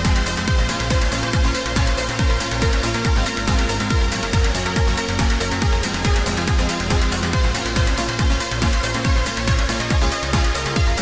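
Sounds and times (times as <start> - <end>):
hi-hats: 0.0 - 11.0
kick drum: 0.0 - 11.0
synth chords: 0.0 - 11.0.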